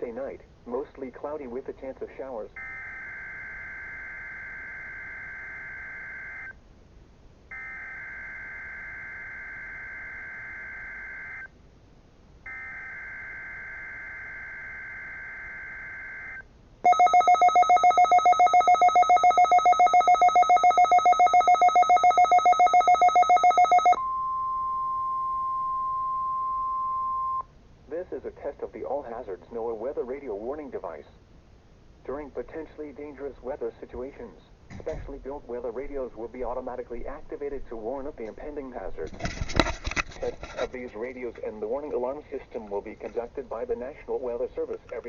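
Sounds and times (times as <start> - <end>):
steady warning alarm tone: 2.6 - 6.6, 7.5 - 11.5, 12.5 - 27.4
rapid electronic beeping: 16.9 - 24.0.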